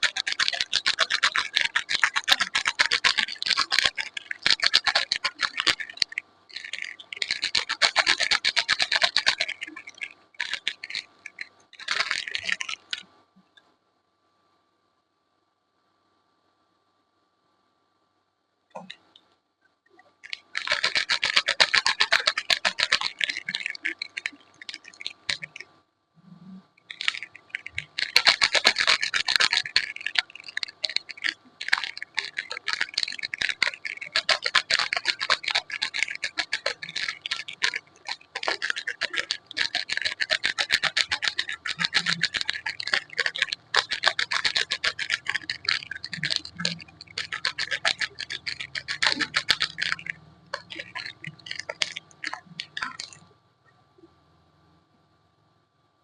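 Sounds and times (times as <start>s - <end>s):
soap scratching and crackling: 0.0s - 13.0s, 20.1s - 25.7s, 26.8s - 53.2s.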